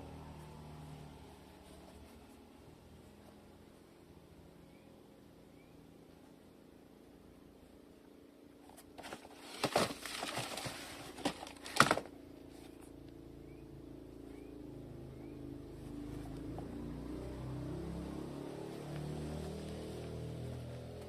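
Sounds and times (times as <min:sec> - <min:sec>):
rustling and handling noises: 0:08.6 - 0:13.0.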